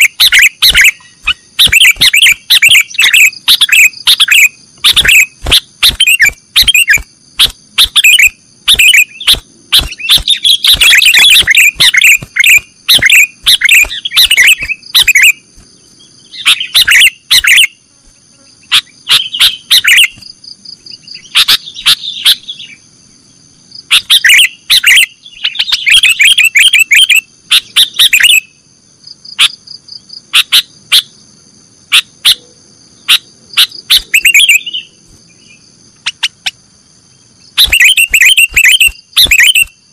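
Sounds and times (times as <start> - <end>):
bird chattering calls: 0.0 - 15.4, 16.2 - 17.8, 18.6 - 20.2, 20.9 - 22.8, 23.8 - 28.5, 33.0 - 35.0, 36.0 - 36.6, 37.5 - 39.7
high-pitched insect-like buzz: 0.0 - 22.9.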